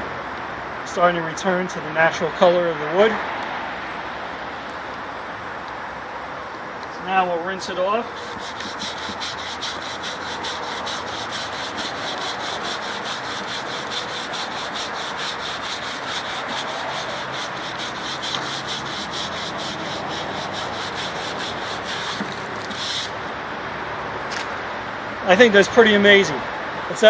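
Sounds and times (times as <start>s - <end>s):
brush scrubbing wet wood: 7.6s - 23.2s.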